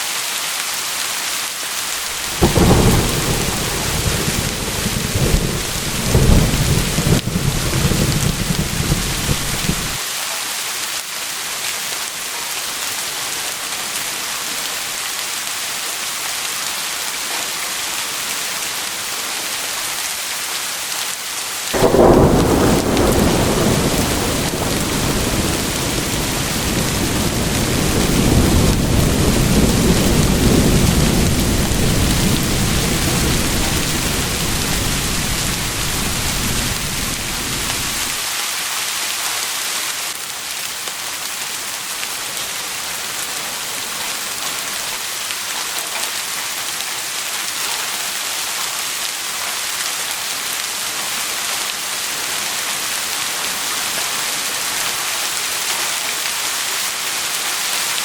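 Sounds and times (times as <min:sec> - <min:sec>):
steady rain: 0:00.0 - 0:58.0
low rumble of thunder: 0:02.1 - 0:10.0, 0:21.8 - 0:38.2.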